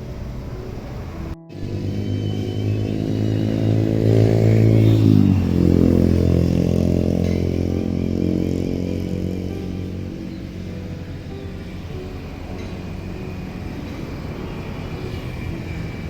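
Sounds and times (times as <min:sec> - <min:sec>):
engine passing by: 0:00.0 - 0:16.0.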